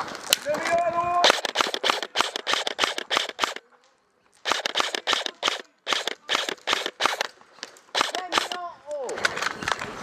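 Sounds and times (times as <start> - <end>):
airsoft guns firing rapid shots: 1.2 - 3.6, 4.4 - 7.3, 7.9 - 8.6.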